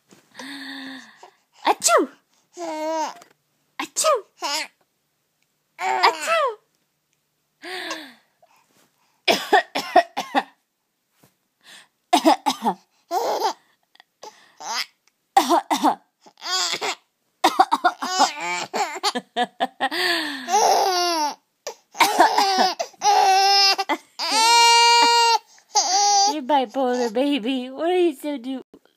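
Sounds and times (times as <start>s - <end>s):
baby giggling: 17.9s - 19.8s, 22.0s - 26.4s.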